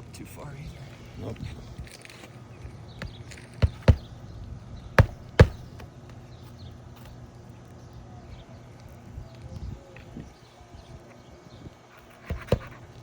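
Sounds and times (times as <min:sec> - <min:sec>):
hammer blows on nail: 0:05.0 - 0:05.9.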